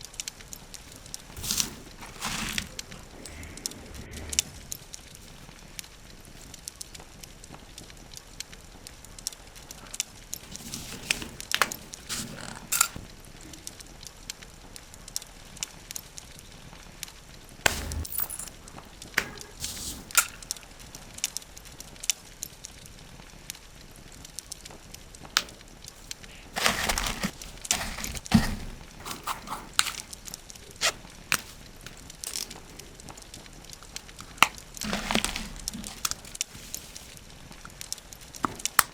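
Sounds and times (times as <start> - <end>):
packaging rustling: 0.6 - 3.5, 4.6 - 5.7, 10.4 - 13.1, 19.5 - 20.6, 25.4 - 38.9
clicks and clinks of packing: 0.8 - 3.4, 10.4 - 13.0, 17.7 - 18.6, 19.2 - 20.6, 25.4 - 32.9, 33.9 - 37.2, 38.4 - 38.9.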